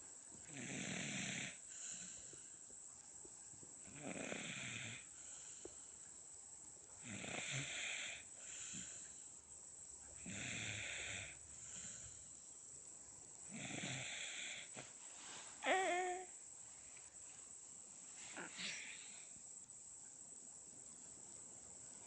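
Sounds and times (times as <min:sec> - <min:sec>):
baby snoring: 0:00.5 - 0:02.2, 0:03.9 - 0:05.1, 0:07.0 - 0:09.0, 0:13.5 - 0:14.9, 0:15.6 - 0:16.3, 0:18.4 - 0:19.3.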